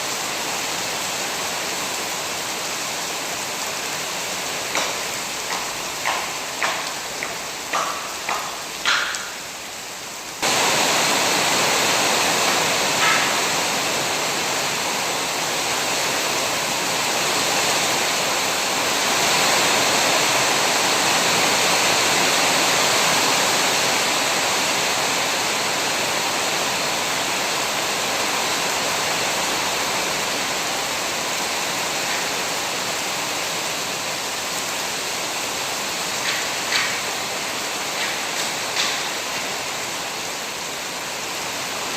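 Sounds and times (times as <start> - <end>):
heavy rain pouring: 0.0 - 41.9
rain drop ticks: 4.6 - 9.5, 36.1 - 37.2, 37.8 - 39.5.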